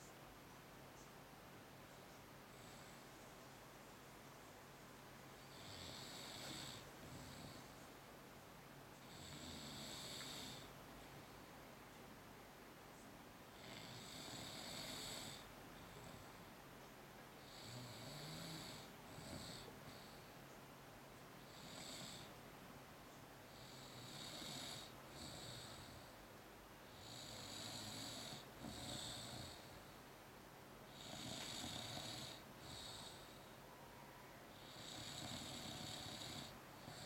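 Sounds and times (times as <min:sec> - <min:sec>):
person snoring: 0:05.5 - 0:07.6, 0:26.9 - 0:29.7, 0:30.9 - 0:33.4, 0:34.6 - 0:37.0.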